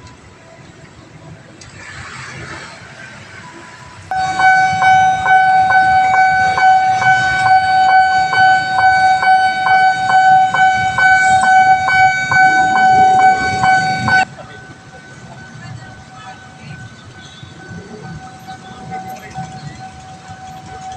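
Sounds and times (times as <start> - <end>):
level crossing warning alarm: 3.5 - 20.9.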